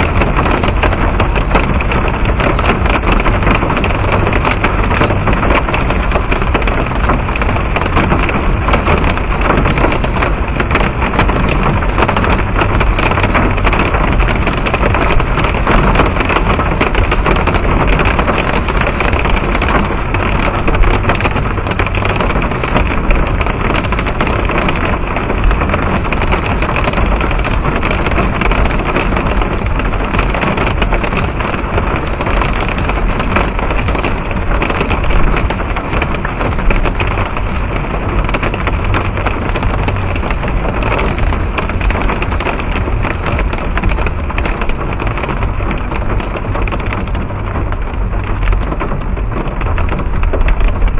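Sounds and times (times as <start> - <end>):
low rumble: 0.0 - 50.9
small hail pelting down: 0.0 - 50.9.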